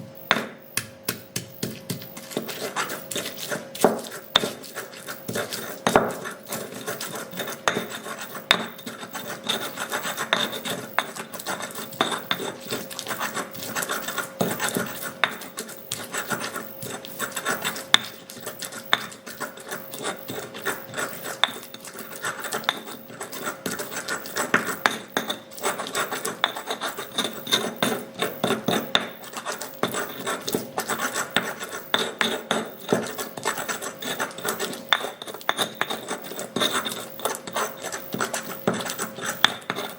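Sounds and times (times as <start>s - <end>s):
pestle grinding in mortar: 0.1s - 39.9s
pestle knocking bowl: 0.2s - 8.9s.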